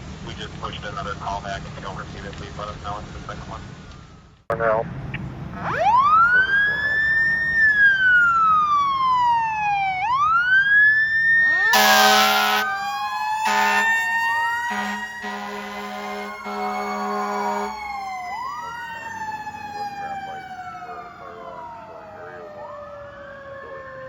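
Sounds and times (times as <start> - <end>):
fire engine siren wailing: 5.4 - 24.0
air horn blasts: 11.7 - 12.8, 13.4 - 17.8.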